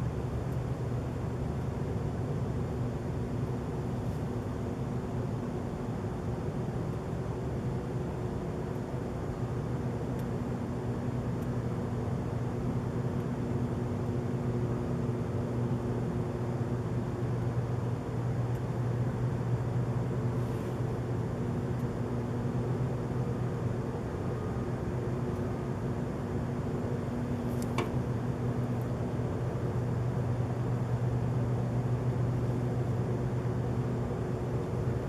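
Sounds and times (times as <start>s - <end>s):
low droning hum: 7.2s - 35.0s.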